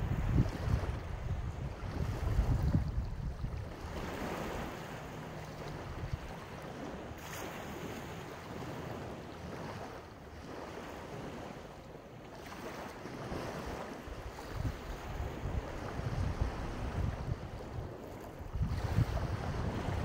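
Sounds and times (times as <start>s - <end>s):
wind buffeting microphone: 0.0s - 9.9s, 13.1s - 20.0s
sea waves washing onto shore: 0.0s - 20.0s.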